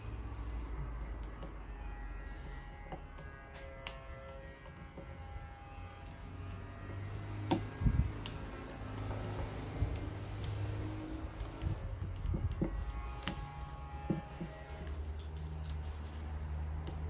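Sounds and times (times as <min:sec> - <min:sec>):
steady low hum: 0:00.0 - 0:17.0
screwdriver and metal parts clicking: 0:14.3 - 0:15.9.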